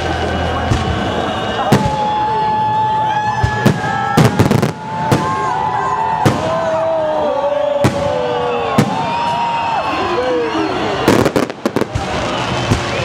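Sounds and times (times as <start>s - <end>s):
fireworks crackling burst: 0.0s - 2.2s, 10.7s - 13.0s
fireworks bangs: 0.0s - 7.0s, 7.7s - 13.0s
whistling fireworks: 0.0s - 13.0s.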